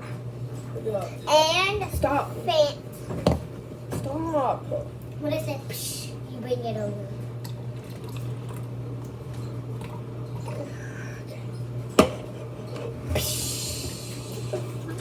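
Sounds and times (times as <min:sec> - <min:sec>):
steady low hum: 0:00.0 - 0:15.0
cup set down on table: 0:12.0 - 0:12.3.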